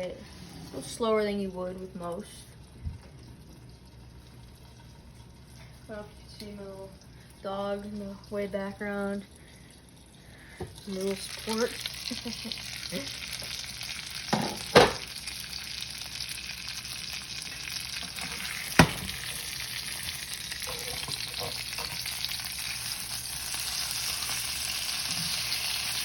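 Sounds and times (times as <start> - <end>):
steak sizzling in a pan: 10.9 - 26.0.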